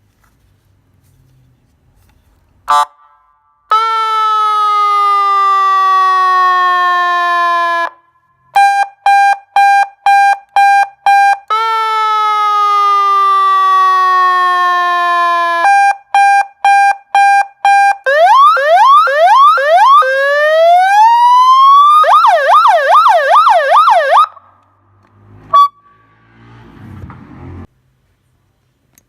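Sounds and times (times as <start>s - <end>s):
electronic siren: 8.6s - 24.5s, 25.5s - 26.2s.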